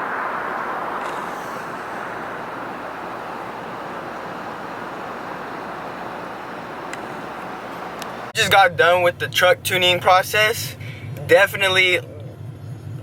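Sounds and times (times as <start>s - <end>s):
vehicle road and wind noise: 0.0s - 13.0s.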